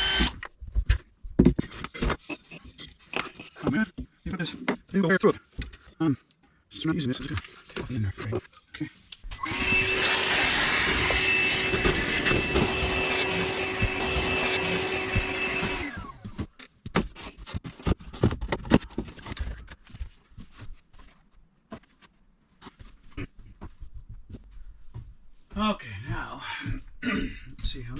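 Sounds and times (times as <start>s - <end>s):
small electric motor whining: 0.0s - 0.4s, 9.4s - 16.3s.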